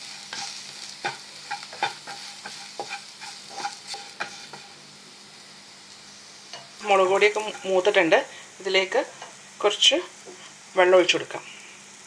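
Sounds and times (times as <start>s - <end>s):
utensil scraping a pan: 0.0s - 4.8s, 7.3s - 7.9s
oil sizzling: 0.0s - 12.0s.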